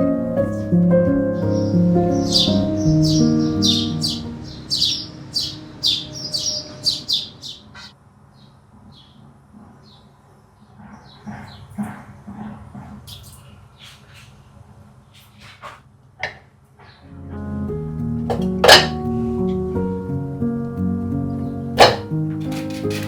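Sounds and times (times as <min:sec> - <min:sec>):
soft background music: 0:00.0 - 0:07.4, 0:17.1 - 0:23.0
small bird chirping: 0:01.4 - 0:09.2.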